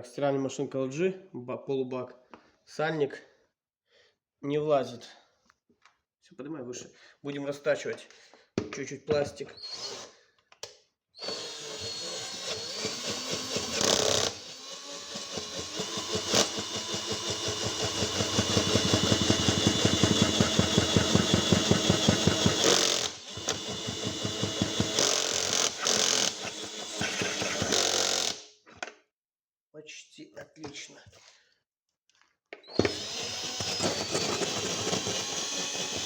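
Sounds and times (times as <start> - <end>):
power tool boring plastic: 9.6 - 10.1, 11.2 - 28.4, 32.6 - 36.0
cutter chattering on plastic: 12.3 - 28.0.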